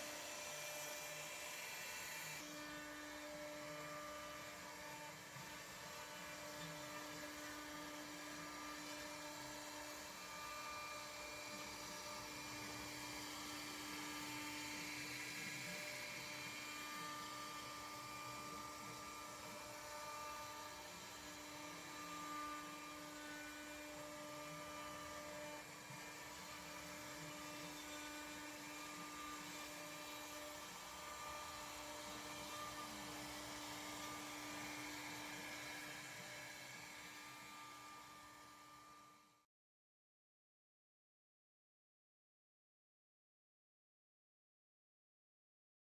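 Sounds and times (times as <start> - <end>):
router spindle whine: 0.0 - 39.4.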